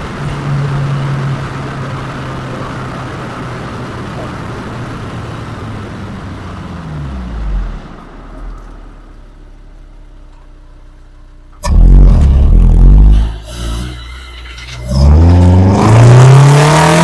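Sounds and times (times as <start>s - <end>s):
car engine revving: 11.5s - 17.0s.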